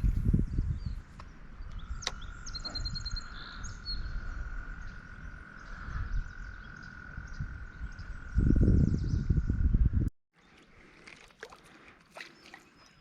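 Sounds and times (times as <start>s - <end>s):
bird chirps: 0.4s - 9.6s.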